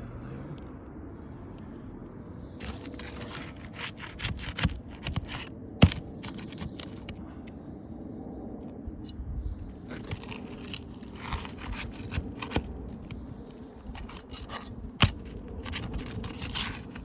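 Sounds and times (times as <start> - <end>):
shingles scraping and crackling: 2.6 - 7.4, 9.0 - 17.0.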